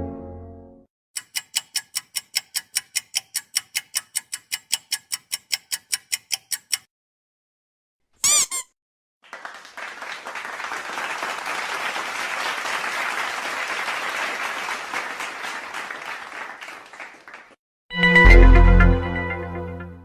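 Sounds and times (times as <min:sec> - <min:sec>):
crowd applause: 0:09.2 - 0:17.6.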